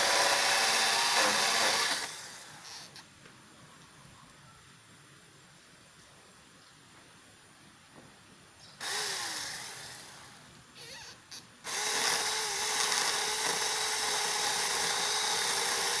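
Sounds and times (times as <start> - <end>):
electric chainsaw motor: 0.0 - 2.8, 8.8 - 11.0, 11.6 - 16.0.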